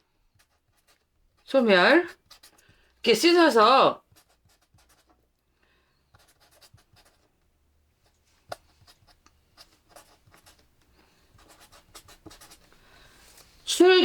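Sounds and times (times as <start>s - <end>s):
pen scratching on paper: 0.3s - 2.8s, 4.0s - 5.2s, 6.1s - 7.3s, 8.5s - 12.8s.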